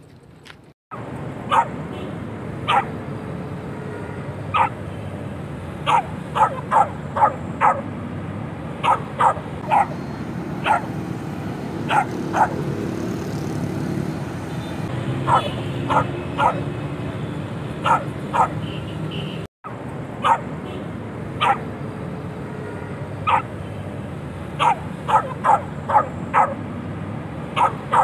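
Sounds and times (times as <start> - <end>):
dog barking: 1.5 - 1.8, 2.6 - 3.0, 4.5 - 4.8, 5.8 - 7.9, 8.8 - 10.0, 10.6 - 10.9, 11.8 - 12.6, 15.2 - 16.7, 17.8 - 18.6, 20.2 - 20.5, 21.4 - 21.7, 23.2 - 23.6, 24.6 - 26.6, 27.5 - 28.0.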